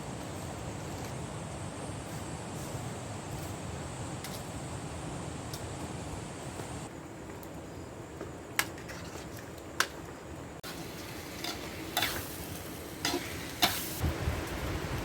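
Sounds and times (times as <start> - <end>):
steady hiss: 10.6 - 15.0.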